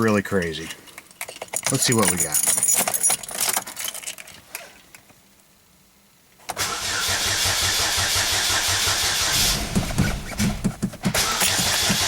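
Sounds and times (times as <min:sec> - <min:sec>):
car engine cranking on starter: 0:06.5 - 0:12.0.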